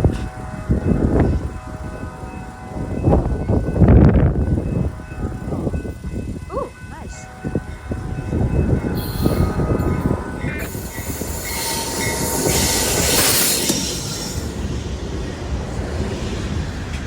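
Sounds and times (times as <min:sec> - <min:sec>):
train wheels rumbling on rail: 0:00.0 - 0:17.0
wheel squeal: 0:09.0 - 0:14.7
rushing hiss: 0:09.0 - 0:15.6.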